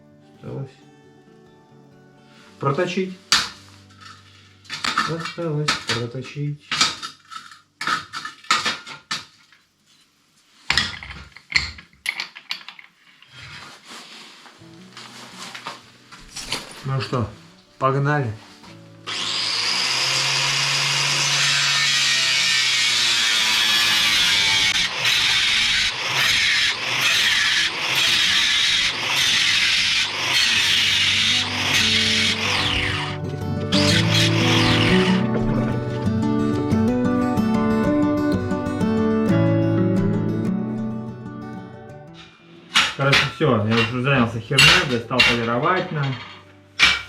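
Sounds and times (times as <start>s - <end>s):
tool rasping metal: 19.1s - 35.7s
metal pieces clanking together: 44.6s - 47.0s.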